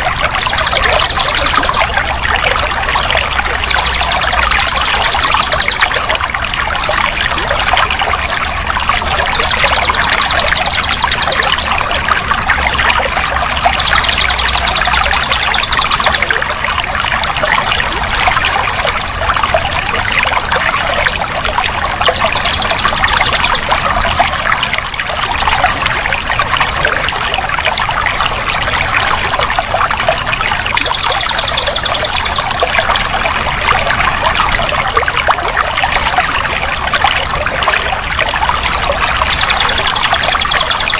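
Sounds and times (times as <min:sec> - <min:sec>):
running water trickling: 0:00.0 - 0:40.9
high-pitched trill: 0:00.2 - 0:02.0, 0:03.6 - 0:06.0, 0:09.2 - 0:11.7, 0:13.7 - 0:16.3, 0:22.3 - 0:23.7, 0:30.8 - 0:32.6, 0:39.2 - 0:40.9.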